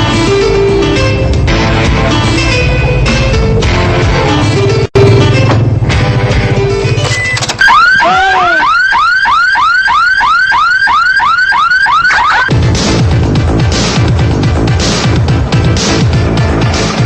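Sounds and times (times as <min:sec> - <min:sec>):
car alarm siren chirping: 0:07.6 - 0:12.5.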